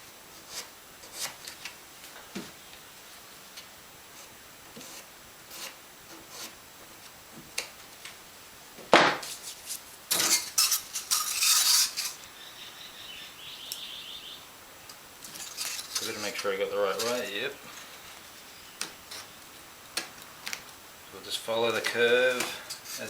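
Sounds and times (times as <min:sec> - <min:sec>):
clattering and scraping: 0:09.2 - 0:12.2, 0:15.2 - 0:17.9.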